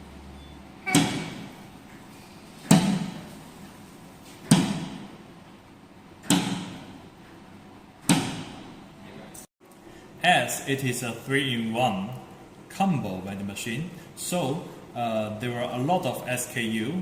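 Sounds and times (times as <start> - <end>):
metal locker doors banging open: 0.8 - 1.6, 2.6 - 3.4, 4.4 - 5.2, 6.2 - 7.0, 8.1 - 8.7.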